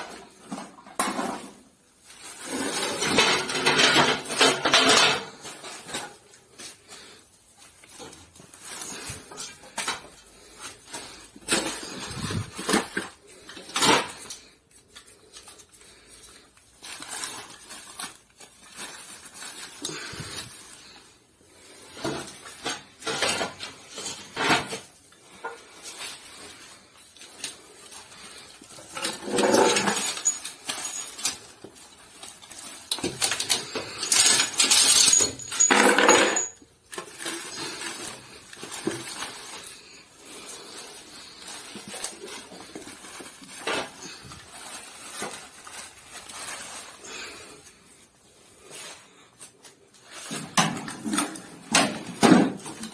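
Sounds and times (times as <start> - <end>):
metal cookware clinking and knocking: 34.0 - 36.6.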